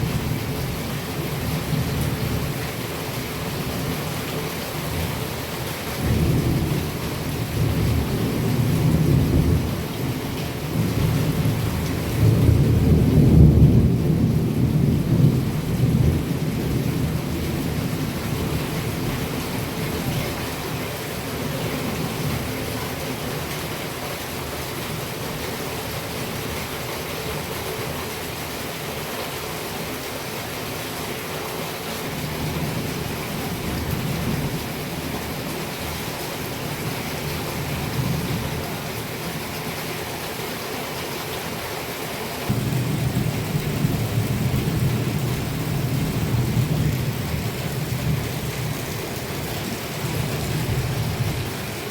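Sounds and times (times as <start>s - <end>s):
heavy rain falling: 0.0s - 51.9s
rolling thunder: 42.5s - 51.6s.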